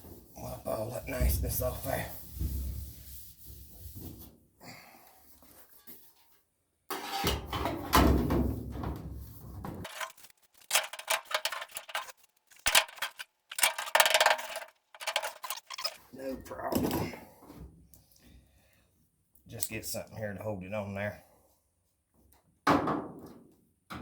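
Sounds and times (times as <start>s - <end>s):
metal clattering and scraping: 9.8s - 16.0s.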